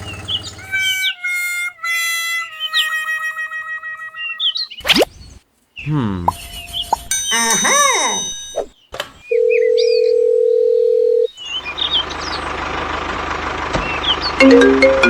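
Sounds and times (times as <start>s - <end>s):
cartoon sliding sound effects: 0.8s - 5.1s
faint bird chirps: 2.5s - 10.3s.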